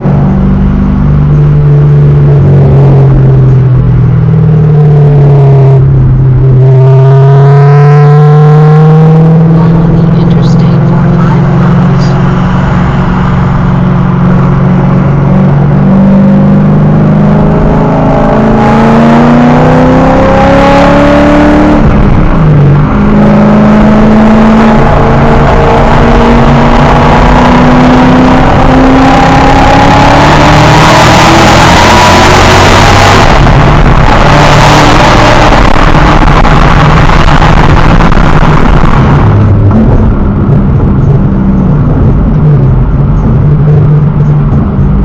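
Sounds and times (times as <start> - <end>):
car engine accelerating: 0.0 - 45.0.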